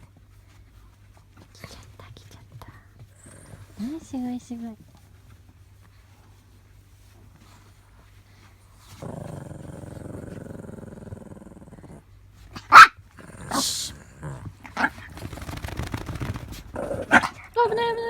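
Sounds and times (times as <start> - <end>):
small dog growling: 3.1 - 4.1, 8.8 - 18.0
dog barking and yipping: 12.6 - 13.8, 17.0 - 17.9.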